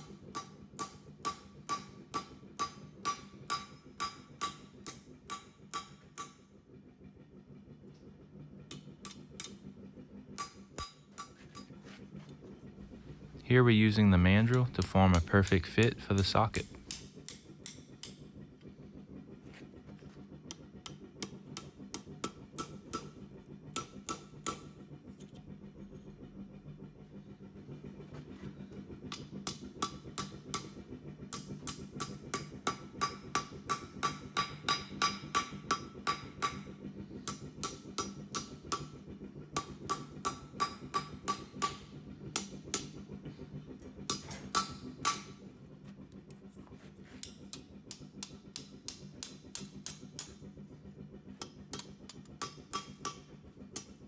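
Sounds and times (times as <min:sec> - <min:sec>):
hammer ringing on metal: 0:00.3 - 0:06.4.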